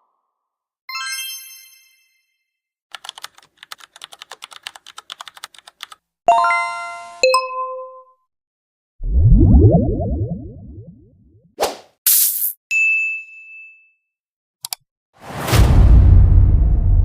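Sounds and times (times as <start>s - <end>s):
keyboard typing clicks: 2.9s - 6.0s.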